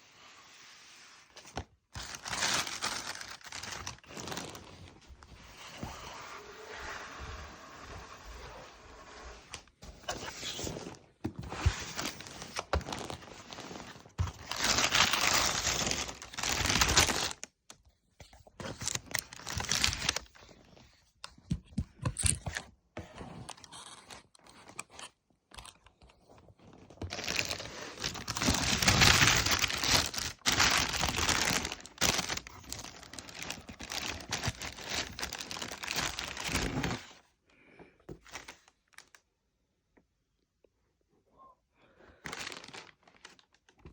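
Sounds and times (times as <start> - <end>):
paper packaging crinkling: 2.0 - 4.8, 11.6 - 17.5, 18.6 - 20.3, 27.0 - 37.0, 42.2 - 43.8.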